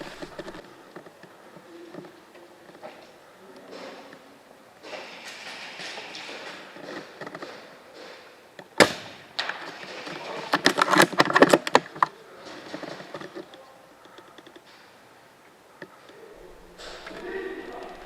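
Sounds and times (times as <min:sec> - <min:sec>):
pellet impacts: 0:05.9 - 0:13.4
airsoft guns firing: 0:07.4 - 0:12.0.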